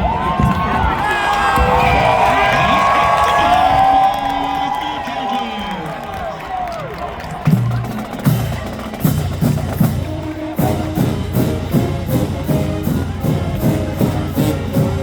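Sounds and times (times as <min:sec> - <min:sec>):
drumline beat: 0:06.8 - 0:15.0.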